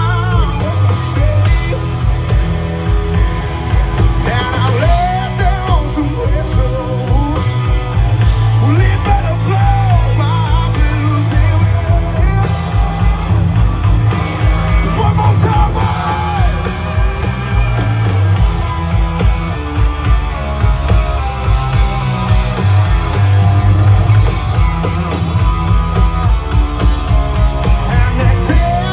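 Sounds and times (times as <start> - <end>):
live country-rock band: 0.0 - 28.9
person singing: 4.2 - 7.7, 14.2 - 17.0, 27.7 - 28.9.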